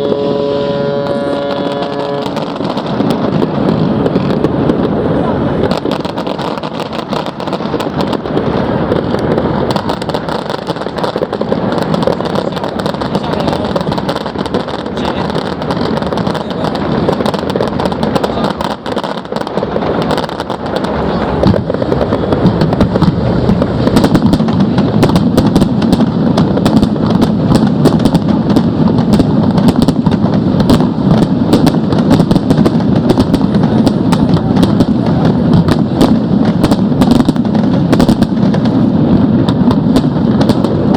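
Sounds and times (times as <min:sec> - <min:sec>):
fireworks crackling and popping: 0:00.0 - 0:40.9
rumble of firework bursts: 0:00.0 - 0:40.9.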